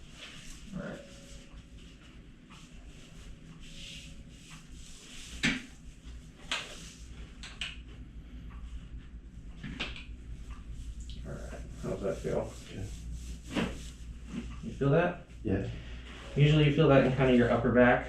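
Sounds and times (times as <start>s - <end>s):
strap and body rustling: 10.8s - 14.6s.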